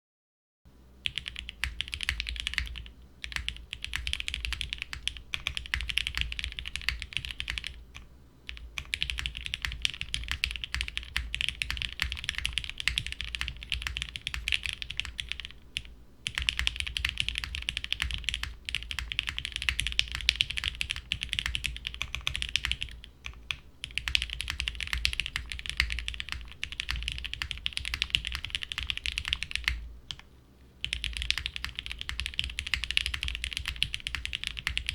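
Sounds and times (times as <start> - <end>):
mechanical keyboard typing: 1.0 - 34.9.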